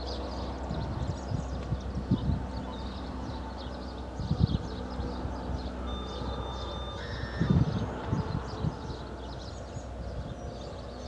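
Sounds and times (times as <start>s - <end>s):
steady low rumble: 0.0s - 11.0s
bird chirps: 4.6s - 11.0s
electronic data tone: 5.9s - 7.4s.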